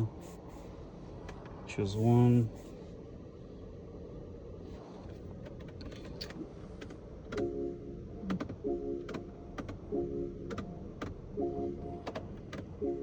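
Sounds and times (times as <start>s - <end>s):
sharp taps and clicks: 8.3s - 9.8s, 10.5s - 11.2s.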